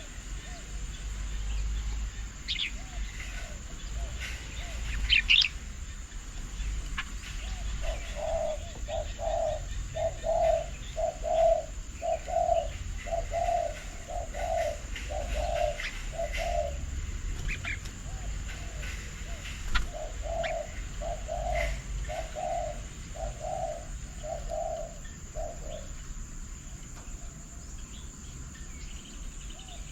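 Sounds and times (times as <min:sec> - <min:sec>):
small birds chirping: 0:00.0 - 0:29.9
bird calling low notes: 0:06.9 - 0:26.0.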